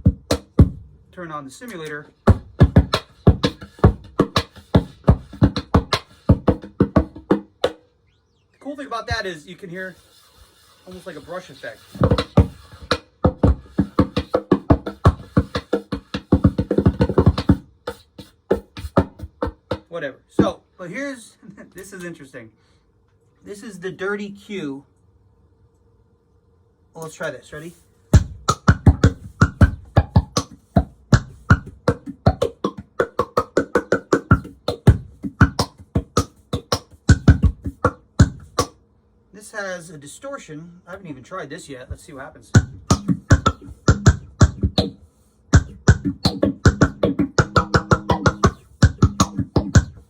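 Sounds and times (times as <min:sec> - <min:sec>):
amplified percussion groove: 0:00.0 - 0:00.9, 0:01.7 - 0:07.8, 0:10.9 - 0:20.6, 0:28.1 - 0:38.8, 0:41.9 - 0:50.0
fast drum beat through bass amp: 0:00.0 - 0:00.9, 0:02.2 - 0:07.5, 0:10.9 - 0:20.6, 0:28.1 - 0:38.7, 0:42.0 - 0:50.0.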